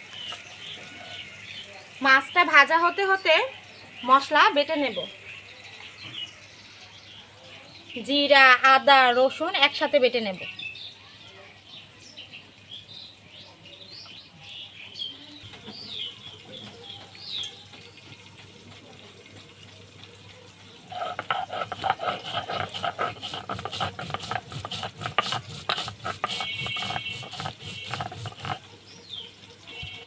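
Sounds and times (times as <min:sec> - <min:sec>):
birds chirping: 0:00.0 - 0:30.0
grinding stone scraping: 0:20.9 - 0:28.7.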